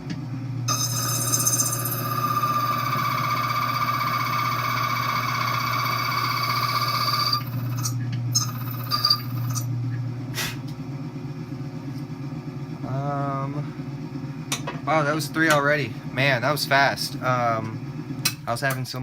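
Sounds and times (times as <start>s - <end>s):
motor humming: 0.0s - 10.4s
key cutting machine whine: 0.6s - 9.7s.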